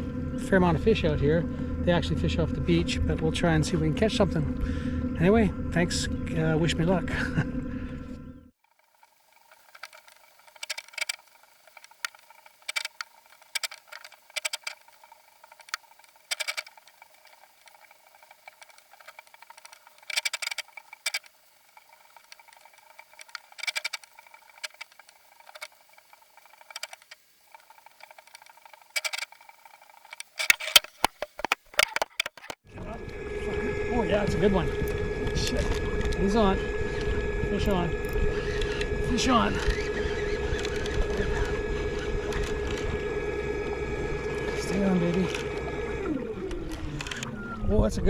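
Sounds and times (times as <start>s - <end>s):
faint steady whine: 0.0s - 48.0s
sharp clicks and ticks: 8.8s - 32.6s.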